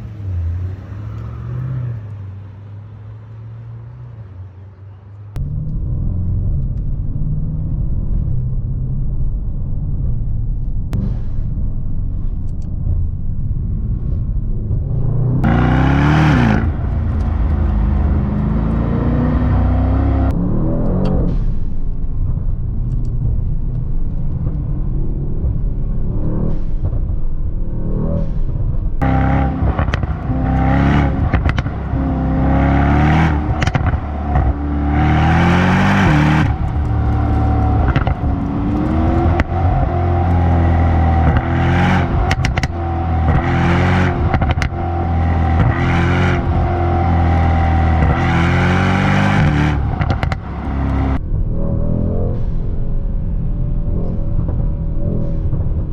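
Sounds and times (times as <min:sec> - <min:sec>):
car engine revving hard: 0:15.2 - 0:20.4, 0:29.0 - 0:51.2
exhaust cracks and pops: 0:28.4 - 0:32.2, 0:33.3 - 0:34.6, 0:35.6 - 0:48.2, 0:49.4 - 0:51.2.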